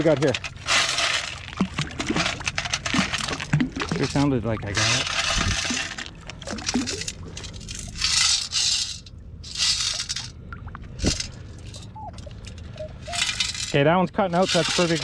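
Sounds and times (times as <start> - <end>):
sand and gravel rushing in scoop: 0.0 - 3.4
faint electronic tones: 11.8 - 13.5.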